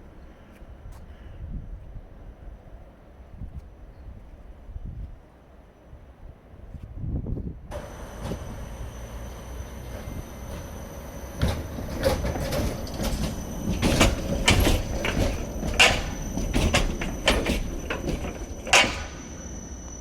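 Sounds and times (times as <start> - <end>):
faint high whine: 7.7 - 20.0
knocks and clatter from tram wheels: 7.7 - 20.0
tram rumbling: 7.7 - 20.0.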